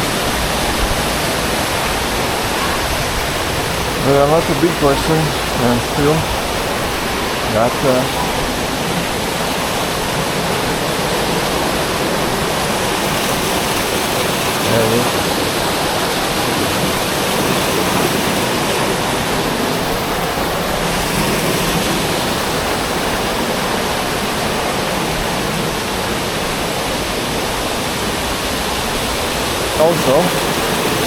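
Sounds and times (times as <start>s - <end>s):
waterfall rushing: 0.0s - 31.0s.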